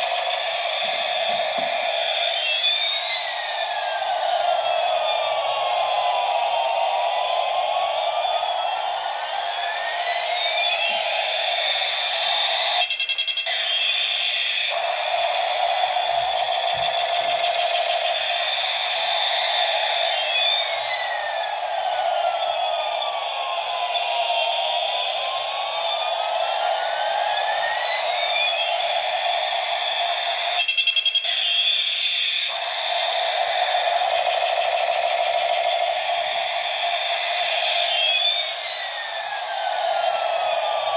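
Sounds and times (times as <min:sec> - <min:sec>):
rapid electronic beeps: 0:00.0 - 0:03.8, 0:09.7 - 0:21.6, 0:23.9 - 0:39.2
electronic drone: 0:00.0 - 0:40.9
rising and falling whistle tones: 0:00.0 - 0:40.9
toy siren-like sound effects: 0:00.0 - 0:40.9
rapid pulsing rattle: 0:13.6 - 0:30.6.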